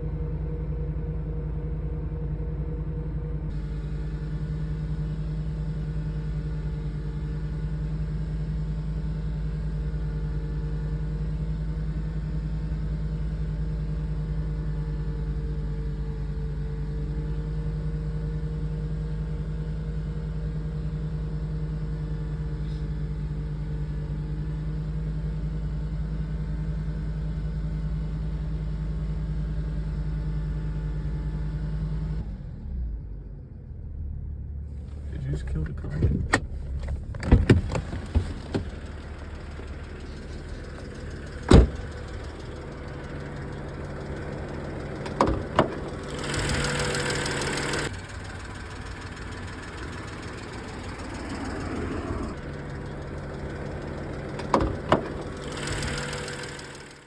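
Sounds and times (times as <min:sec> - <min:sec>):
car engine running: 0:00.0 - 0:57.0
engine ticking: 0:03.5 - 0:22.8, 0:34.7 - 0:57.0.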